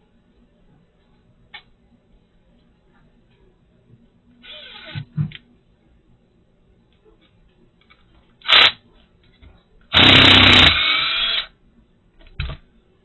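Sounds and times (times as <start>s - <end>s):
power drill running: 8.5s - 8.8s, 10.0s - 11.5s.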